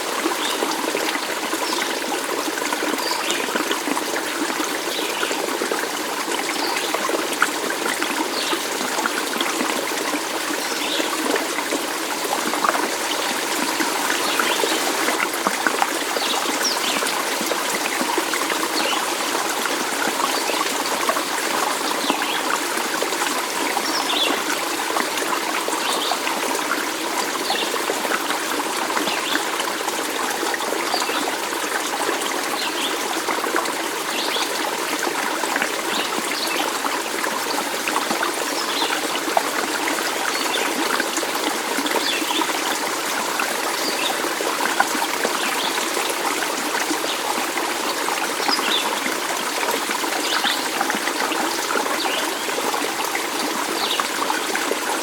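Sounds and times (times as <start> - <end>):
stream trickling and babbling: 0.0 - 55.0.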